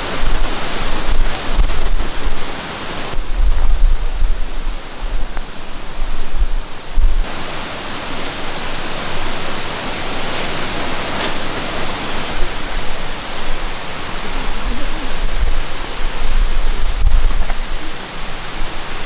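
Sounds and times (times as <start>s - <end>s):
stream rushing: 0.0s - 3.3s, 7.2s - 19.0s
wind buffeting microphone: 0.0s - 19.0s.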